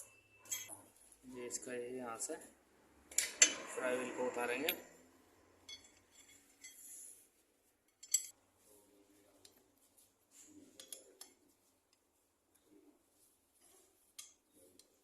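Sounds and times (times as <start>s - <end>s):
tools clinking on metal: 0.4s - 0.8s, 5.6s - 6.9s, 7.9s - 8.4s, 10.8s - 11.4s.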